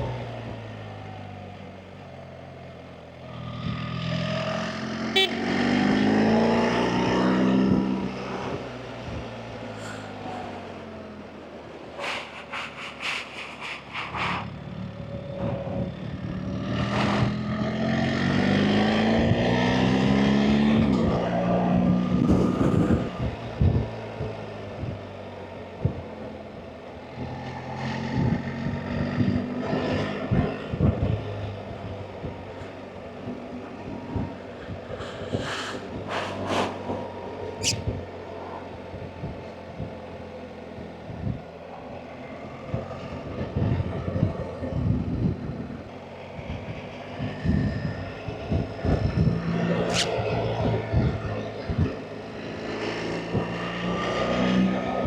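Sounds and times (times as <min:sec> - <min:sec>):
motorcycle engine revving: 0:03.3 - 0:09.2, 0:47.4 - 0:51.3.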